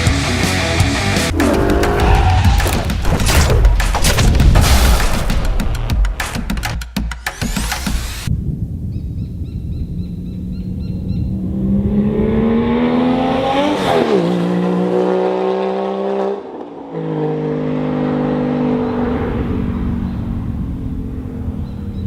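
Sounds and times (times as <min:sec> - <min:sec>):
car engine accelerating: 0:00.6 - 0:04.0, 0:10.2 - 0:22.0.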